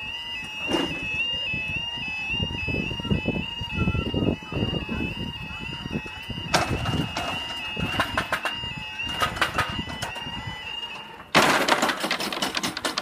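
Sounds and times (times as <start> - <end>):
two-tone crossing alarm: 0.0 - 13.0.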